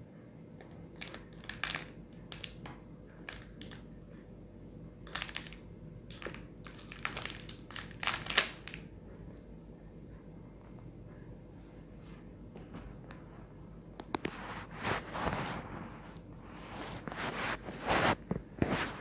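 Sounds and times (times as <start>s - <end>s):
packaging crinkling: 1.0s - 2.6s, 5.1s - 8.9s.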